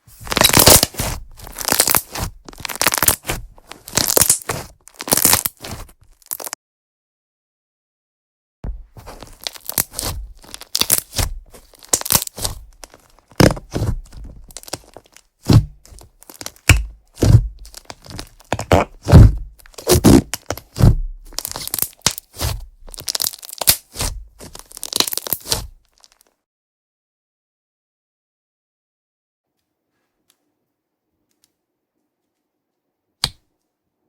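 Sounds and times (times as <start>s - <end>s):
slime crackling and popping: 0.1s - 6.6s, 9.0s - 26.2s.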